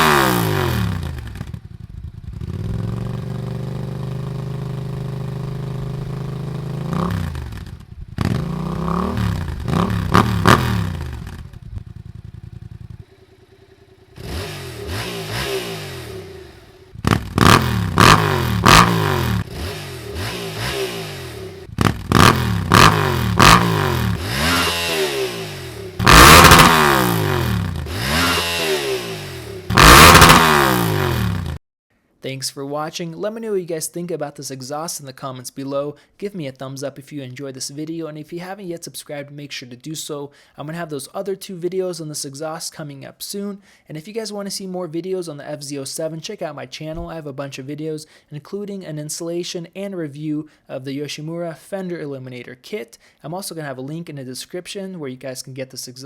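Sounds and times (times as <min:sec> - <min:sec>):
motorcycle engine idling and revving: 0:00.0 - 0:31.6.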